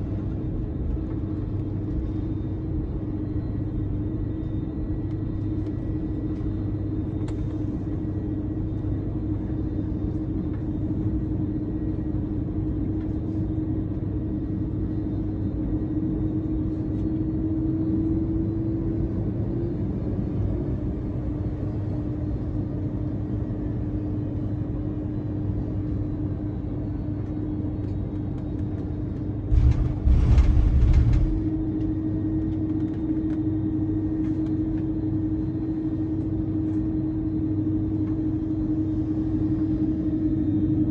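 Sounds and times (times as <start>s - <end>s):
airliner cabin engine rumble: 0.0s - 40.9s
steady hum: 0.0s - 40.9s
loud rumbling burst: 29.5s - 31.6s.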